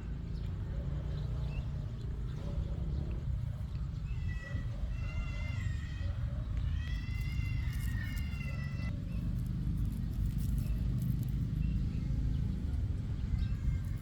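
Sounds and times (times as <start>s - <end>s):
cat meowing: 4.2s - 8.9s
steady low rumble: 7.2s - 14.0s.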